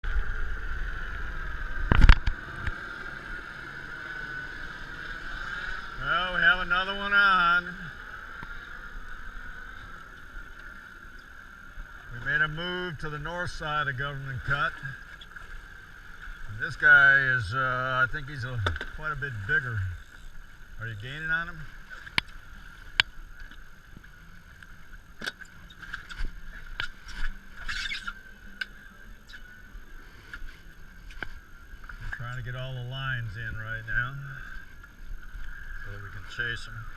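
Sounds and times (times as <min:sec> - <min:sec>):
low rumble: 0:00.0 - 0:27.6
faint steady hum: 0:00.0 - 0:36.9
steady high whine: 0:00.0 - 0:36.9.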